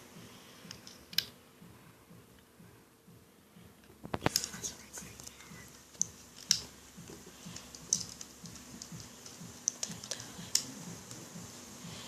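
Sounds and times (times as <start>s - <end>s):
rubber bands snapping on pegs: 5.9s - 11.3s.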